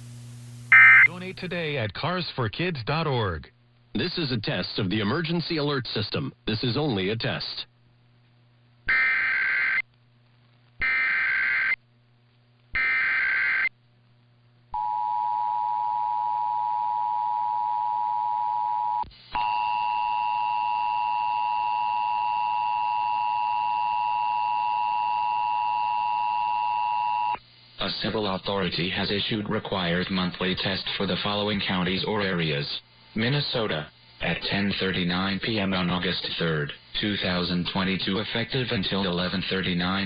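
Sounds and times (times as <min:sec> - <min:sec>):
buzzy digital screech bursts: 0:00.0 - 0:01.5
two-tone attention signal: 0:00.7 - 0:01.2.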